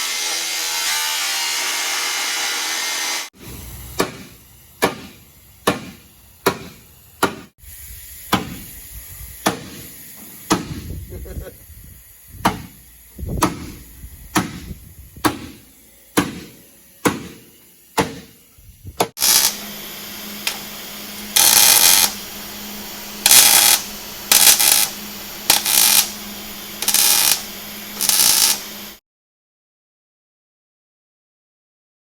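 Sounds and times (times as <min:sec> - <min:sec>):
short hissing tool bursts: 0:03.2 - 0:29.0
steady hum: 0:03.4 - 0:29.0
sharp metal knocks: 0:04.0 - 0:07.5, 0:12.4 - 0:12.8, 0:13.4 - 0:15.6, 0:16.2 - 0:18.3.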